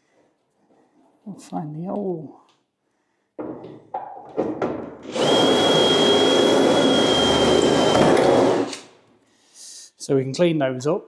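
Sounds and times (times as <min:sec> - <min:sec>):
electric drill drilling into metal: 0:05.0 - 0:09.0.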